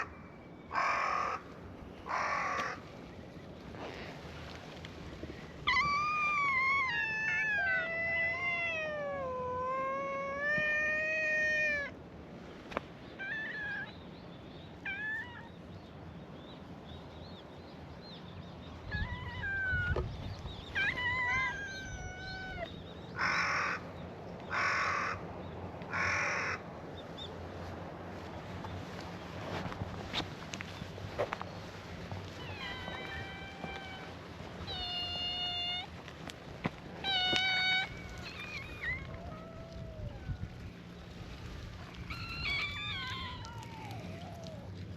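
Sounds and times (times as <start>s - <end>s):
cats meowing: 5.6s - 12.0s, 14.8s - 15.5s, 18.9s - 20.1s, 20.7s - 23.8s, 32.3s - 40.7s, 41.9s - 44.8s
cat harsh calls: 36.9s - 40.5s.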